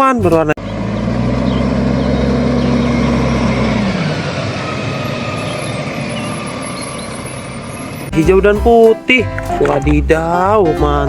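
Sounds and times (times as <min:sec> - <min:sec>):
truck engine winding down: 0:00.0 - 0:08.3.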